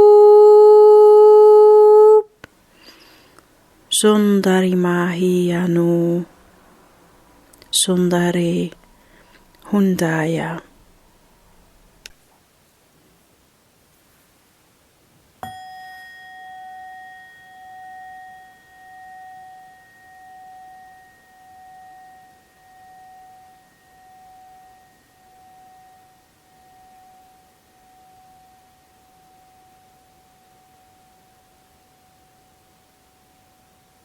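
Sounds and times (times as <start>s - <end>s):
singing bowl ringing: 7.6s - 12.0s, 15.4s - 34.0s.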